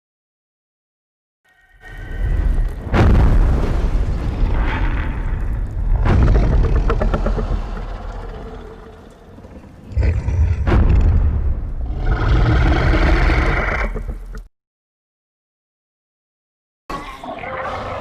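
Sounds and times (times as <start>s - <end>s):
deep rumbling impact with crack: 2.0s - 14.5s
heavy boom: 2.3s - 8.0s, 10.4s - 12.0s
high strained monster roar: 4.6s - 10.7s, 11.8s - 14.0s.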